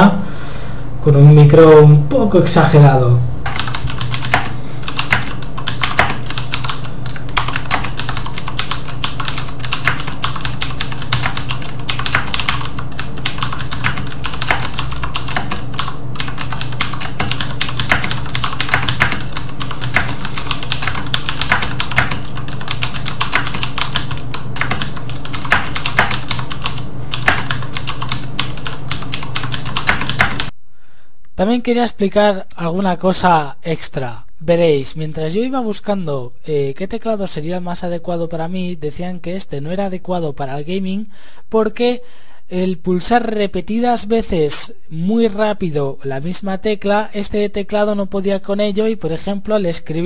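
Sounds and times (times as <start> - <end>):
clicky keyboard typing: 3.4 - 30.5.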